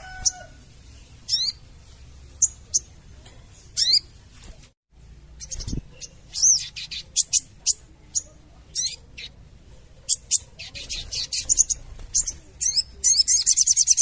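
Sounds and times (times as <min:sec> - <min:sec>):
bird chattering calls: 0:05.4 - 0:14.0.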